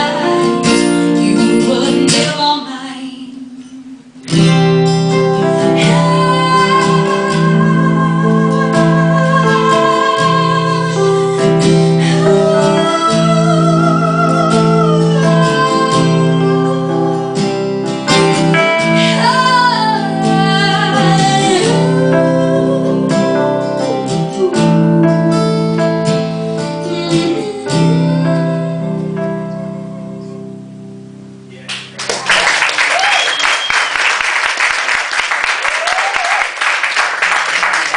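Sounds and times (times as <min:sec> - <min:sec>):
woman singing with vibrato: 0:00.0 - 0:04.6, 0:05.6 - 0:17.4, 0:18.7 - 0:26.0, 0:26.6 - 0:28.6
guitar chords: 0:00.0 - 0:32.0.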